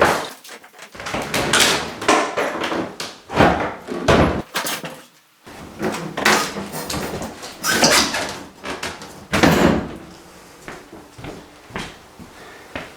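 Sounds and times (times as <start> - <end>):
wooden cabinets knocked and banged: 1.0 - 4.5, 5.5 - 12.1.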